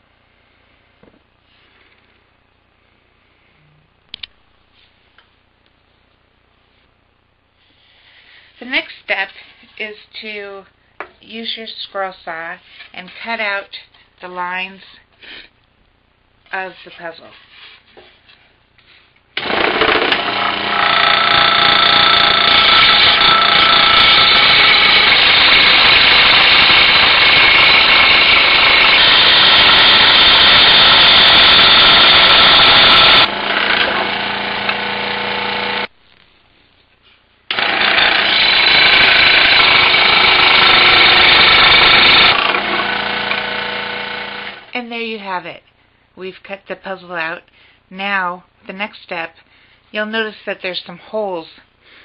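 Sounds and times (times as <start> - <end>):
scroll saw cutting plywood: 19.4 - 35.9, 37.5 - 44.6.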